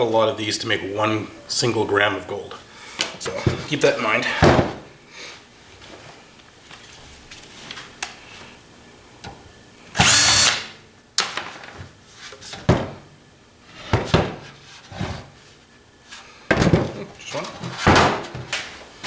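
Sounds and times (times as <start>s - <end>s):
cordless drill whirring: 10.0s - 10.7s.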